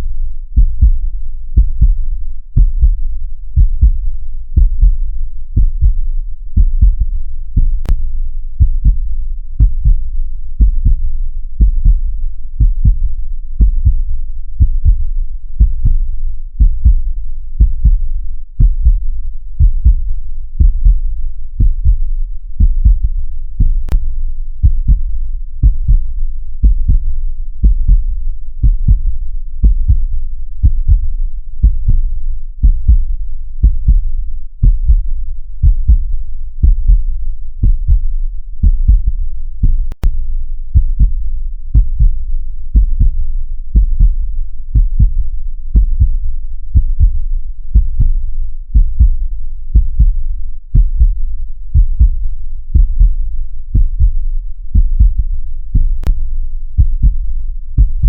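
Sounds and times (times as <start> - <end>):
heartbeat: 0.0 - 8.0, 8.6 - 58.0.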